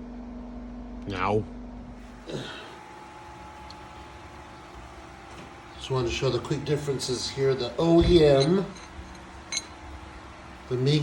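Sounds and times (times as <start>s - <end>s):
steady background hum: 0.0s - 11.0s
person sighing or grunting: 2.2s - 2.8s.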